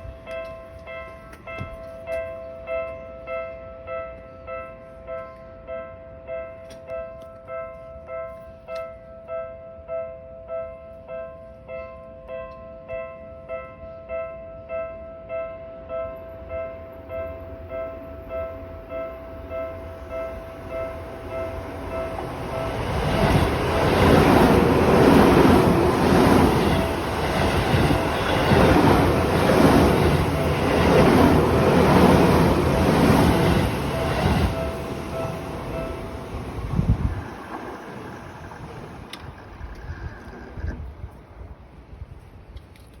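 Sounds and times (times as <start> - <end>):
crossing warning bell: 0.0 - 4.9, 5.7 - 40.7
train rumbling past: 17.2 - 42.1.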